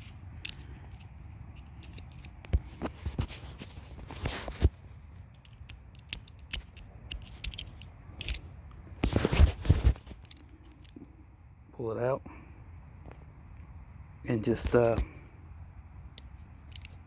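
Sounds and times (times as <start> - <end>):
scraping and rattling: 0.0 - 11.0.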